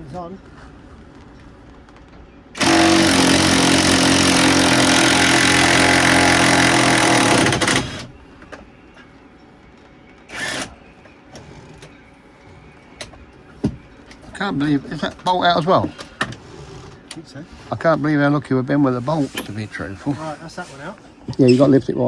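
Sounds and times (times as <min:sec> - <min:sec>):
cordless power tool running: 0:02.6 - 0:08.1.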